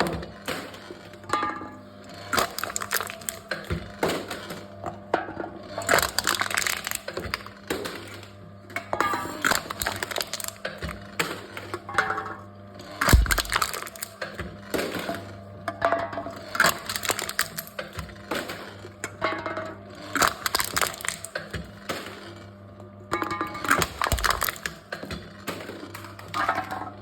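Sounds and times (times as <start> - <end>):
aluminum cans crunching: 2.3 - 3.6, 5.9 - 7.2, 9.5 - 10.6, 13.1 - 14.2, 16.6 - 17.7, 20.2 - 21.3, 23.7 - 24.8
heavy thump: 13.1 - 13.9.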